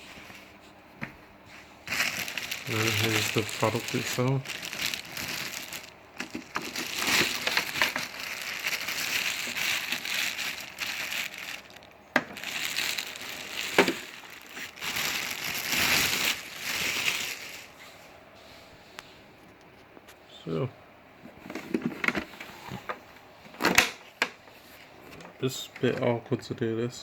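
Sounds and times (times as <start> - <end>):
packaging rustling and crinkling: 1.8 - 18.0.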